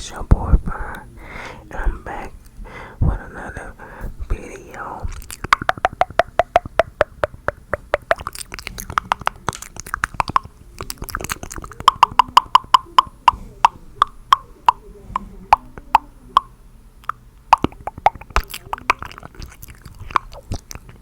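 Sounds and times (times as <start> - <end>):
mouth pops: 4.3 - 21.0
tongue clicks: 5.1 - 21.0.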